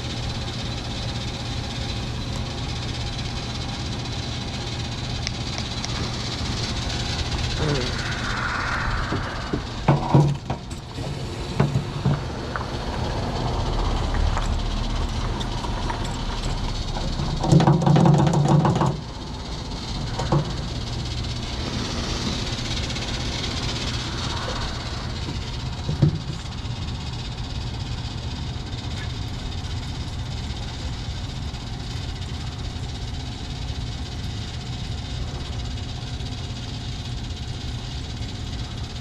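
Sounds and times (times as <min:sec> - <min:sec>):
two-stroke car engine running: 0:12.1 - 0:39.0.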